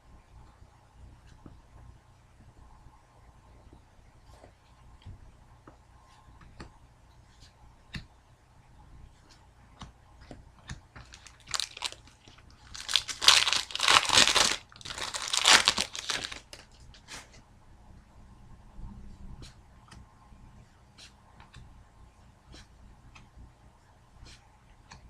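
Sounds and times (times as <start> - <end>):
foil wrapper crinkling and tearing: 11.0 - 16.9.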